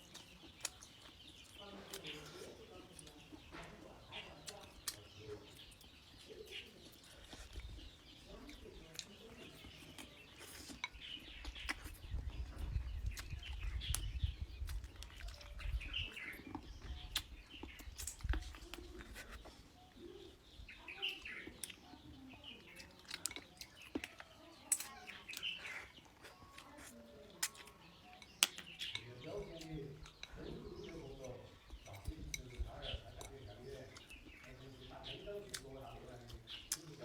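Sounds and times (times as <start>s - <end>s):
small birds chirping: 0.0s - 37.0s
chewing clicks on bone: 27.4s - 30.3s.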